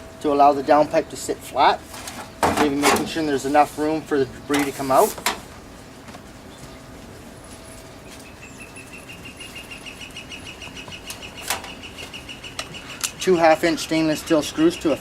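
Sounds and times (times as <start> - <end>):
bird trilling chirps: 8.0 - 15.0.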